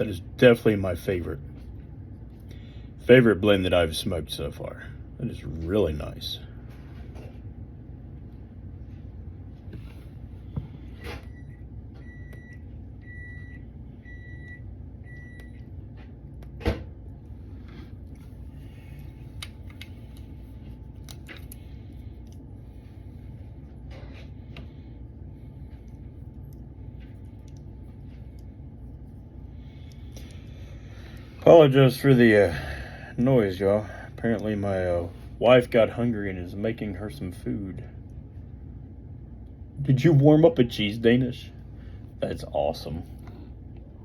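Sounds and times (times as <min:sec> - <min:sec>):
low steady hum: 0:00.0 - 0:44.0
microwave beeping: 0:11.0 - 0:16.9.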